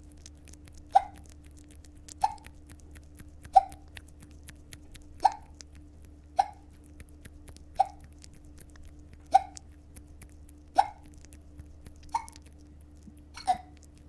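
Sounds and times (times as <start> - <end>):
woman hiccuping: 13.4 - 13.7.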